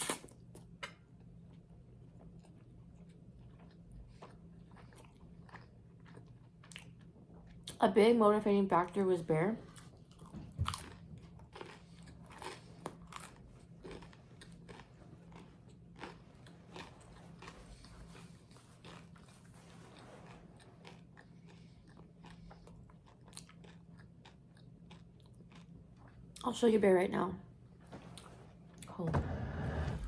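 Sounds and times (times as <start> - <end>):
crunchy chewing: 2.2 - 7.8, 9.6 - 26.4.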